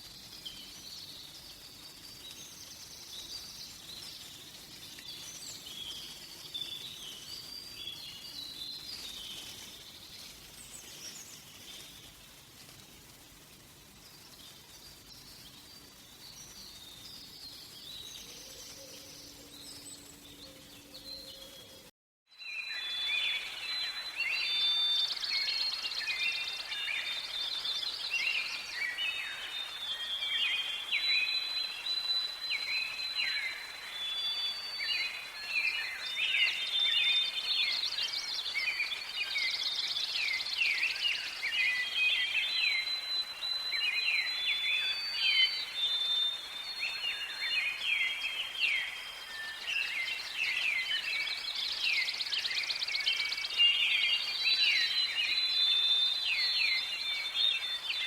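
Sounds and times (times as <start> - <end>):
birds chirping and trilling: 16.0 - 21.9.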